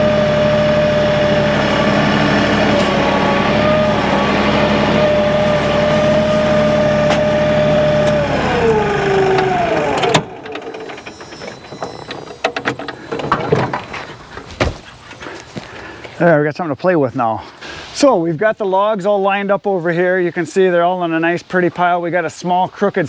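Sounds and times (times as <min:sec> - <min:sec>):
engine idling and shutting off: 0:00.0 - 0:15.7.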